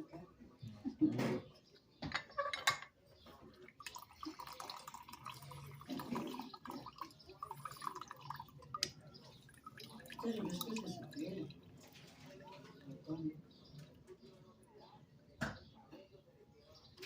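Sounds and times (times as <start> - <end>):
water dripping and trickling: 3.2 - 14.8.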